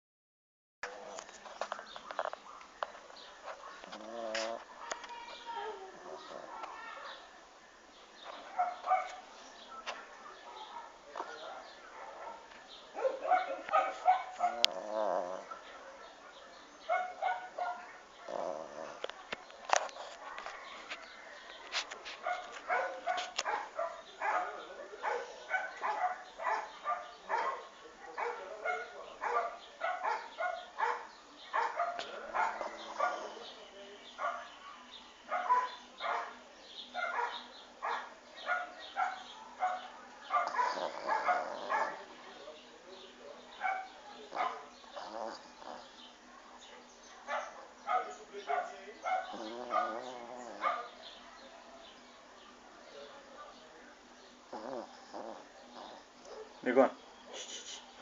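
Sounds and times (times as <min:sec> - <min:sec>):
dog snoring: 0:03.9 - 0:04.7, 0:14.5 - 0:15.5, 0:18.3 - 0:19.0, 0:40.4 - 0:42.0, 0:44.4 - 0:46.0, 0:49.2 - 0:50.9, 0:54.5 - 0:56.4.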